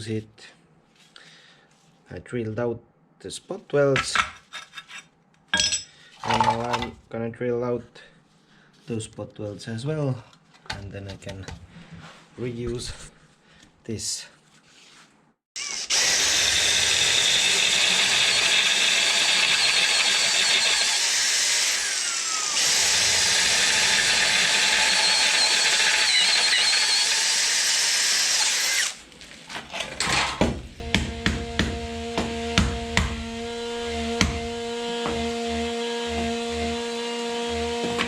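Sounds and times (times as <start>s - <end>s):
power drill boring steel: 15.6s - 29.0s, 30.8s - 38.0s
sharp knocks: 30.4s - 33.3s, 34.2s - 34.4s.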